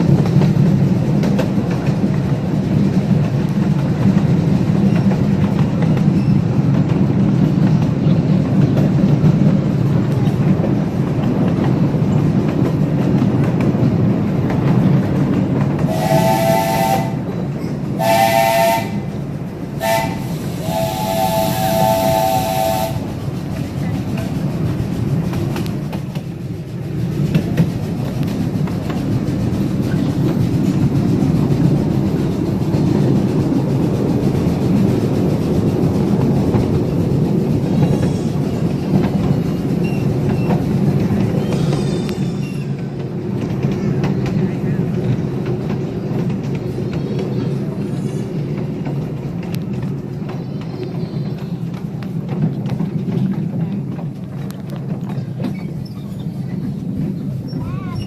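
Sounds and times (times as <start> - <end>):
train rumbling along track: 0.0 - 58.0
steam locomotive chime whistle: 15.9 - 17.4, 18.0 - 19.2, 19.8 - 23.2.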